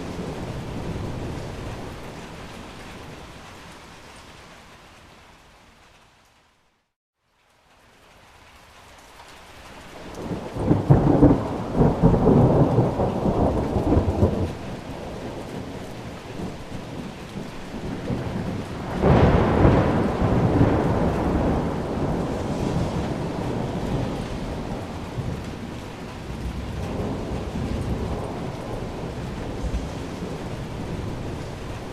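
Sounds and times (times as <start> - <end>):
thunder rolling: 0.0 - 2.8, 10.2 - 31.9
heavy rain: 0.0 - 31.9
sharp thunderclap: 10.2 - 31.9.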